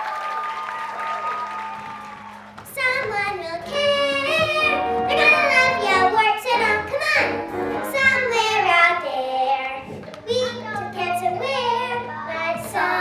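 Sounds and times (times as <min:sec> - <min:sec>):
instrumental accompaniment: 0:03.1 - 0:09.2
children singing: 0:03.8 - 0:08.7.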